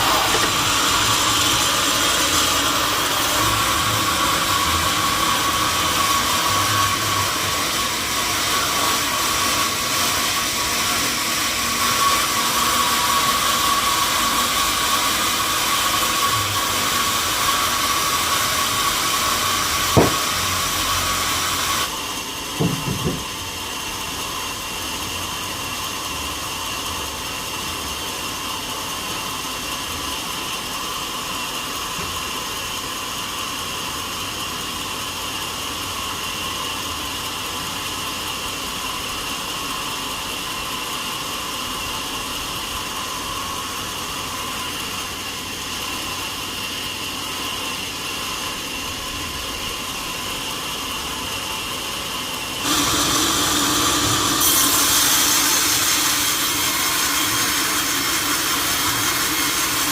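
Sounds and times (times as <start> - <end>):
saw machinery humming: 0.0 - 34.1, 35.1 - 59.9
sharp knock: 20.0 - 20.3.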